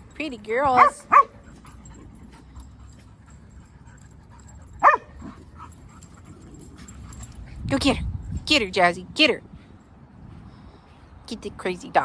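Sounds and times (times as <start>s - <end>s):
dog barking: 0.8s - 1.4s, 4.8s - 5.3s.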